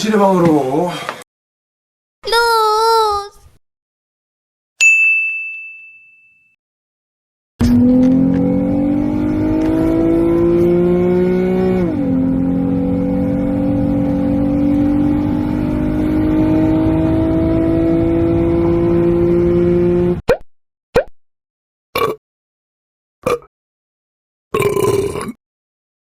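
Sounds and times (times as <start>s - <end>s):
car engine accelerating: 7.6s - 20.2s.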